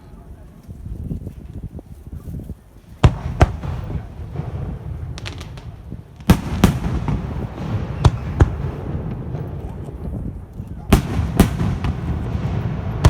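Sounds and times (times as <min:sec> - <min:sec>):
fireworks crackles: 0:01.2 - 0:13.0
fireworks shells bursting: 0:10.9 - 0:13.0.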